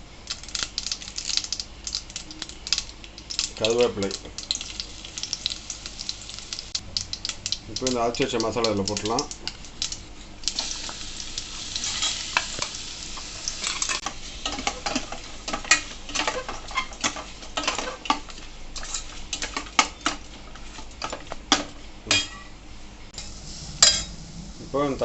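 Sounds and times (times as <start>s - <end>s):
paste sizzling in hot oil: 0.3s - 20.8s.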